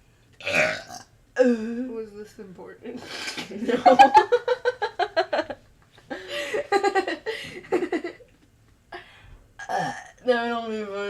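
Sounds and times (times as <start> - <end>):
person burping: 0.4 - 1.1, 9.6 - 10.2.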